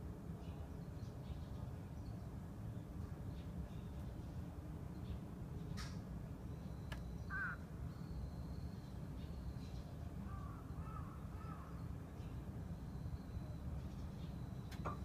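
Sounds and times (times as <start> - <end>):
crow cawing: 7.3 - 7.6, 10.3 - 11.7.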